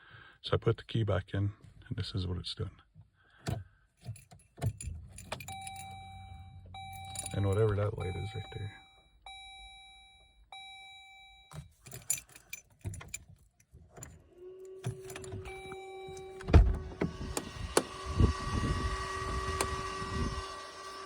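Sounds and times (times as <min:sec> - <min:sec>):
car engine cranking and running: 0:03.4 - 0:08.9, 0:11.7 - 0:21.0
ignition clicks: 0:03.4 - 0:13.2, 0:13.9 - 0:20.6
dashboard chime dinging: 0:05.4 - 0:11.6, 0:15.4 - 0:16.5
steady buzz: 0:14.7 - 0:21.0.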